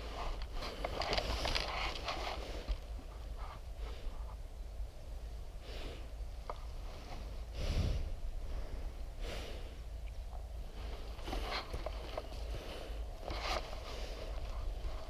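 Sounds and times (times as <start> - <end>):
low wind rumble on microphone: 0.0 - 15.0
person breathing: 3.7 - 4.4, 5.6 - 10.0, 10.6 - 15.0.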